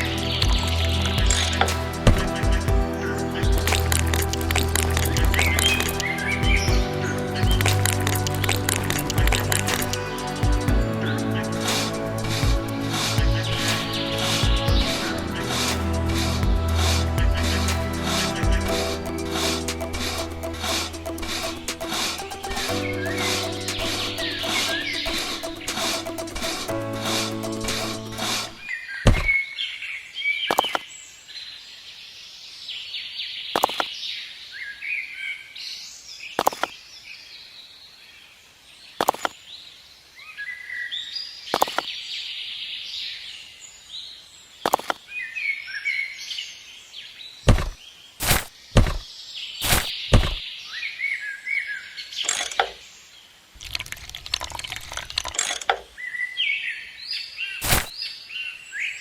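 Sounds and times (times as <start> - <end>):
sharp clicks or knocks: 47.5 - 49.0.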